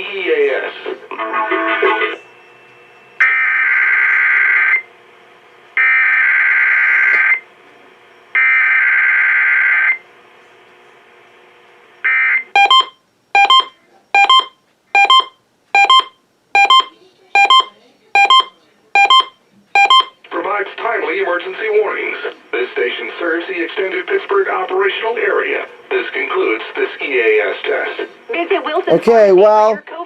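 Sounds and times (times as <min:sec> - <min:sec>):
two-tone attention beeps: 0:12.6 - 0:20.2.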